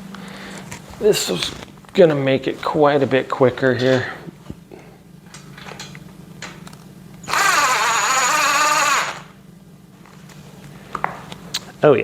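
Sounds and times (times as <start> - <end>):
impact driver motor whine: 7.2 - 9.4.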